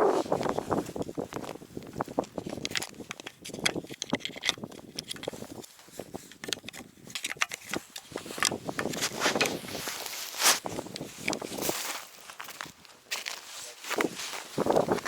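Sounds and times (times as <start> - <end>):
footsteps crunching on snow and ice: 7.8 - 15.0.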